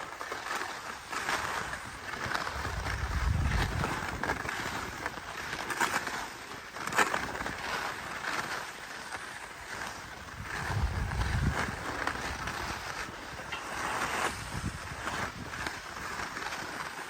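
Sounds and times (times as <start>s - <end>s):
skis sliding over snow: 0.0s - 17.0s.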